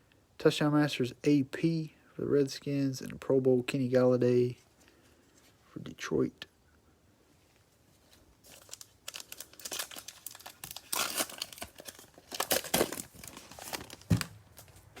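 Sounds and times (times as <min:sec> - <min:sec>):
cellophane wrapper crinkling and tearing: 0:08.4 - 0:14.7.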